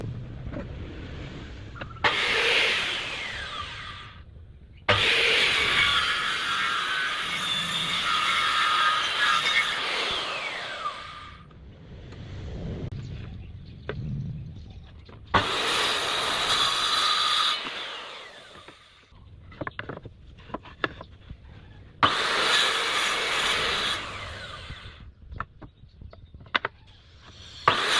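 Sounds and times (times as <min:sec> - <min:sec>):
circular saw cutting wood: 0:01.8 - 0:04.3, 0:04.9 - 0:11.5, 0:15.3 - 0:25.1, 0:26.6 - 0:27.9.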